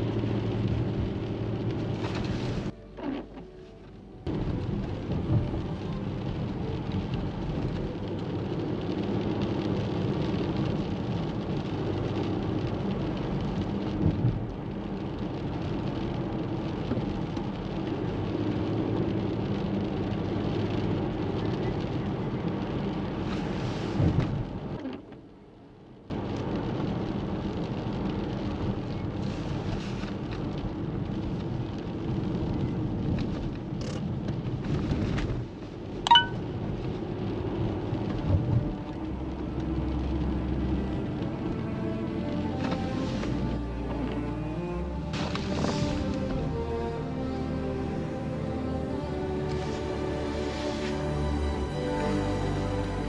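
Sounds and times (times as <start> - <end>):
steady rain: 0.0 - 53.0
low rumble of thunder: 4.3 - 14.8, 36.4 - 42.0.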